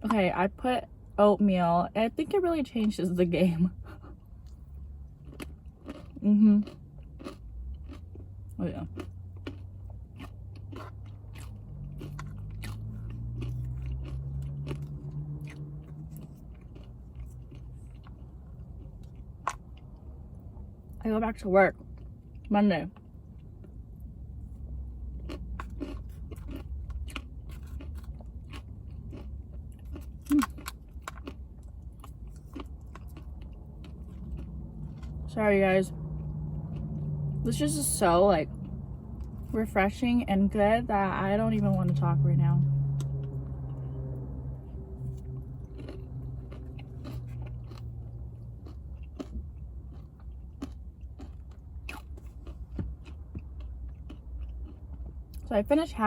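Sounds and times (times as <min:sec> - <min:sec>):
low hum: 0:00.0 - 0:56.0
chewing and biting food: 0:03.8 - 0:21.0, 0:21.7 - 0:39.6, 0:41.2 - 0:55.5.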